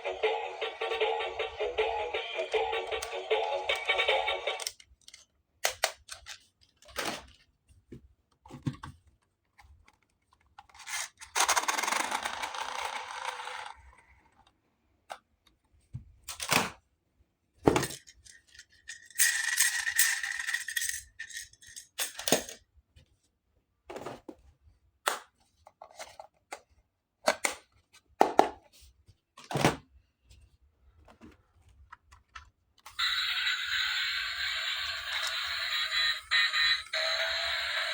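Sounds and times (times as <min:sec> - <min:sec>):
plastic toy pieces clicking: 0:03.8 - 0:07.0, 0:10.8 - 0:13.9, 0:17.8 - 0:22.6, 0:32.9 - 0:37.9.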